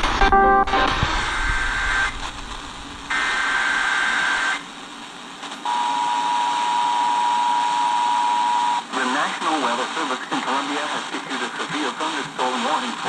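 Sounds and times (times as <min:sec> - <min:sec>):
two-tone attention signal: 0:00.1 - 0:01.0.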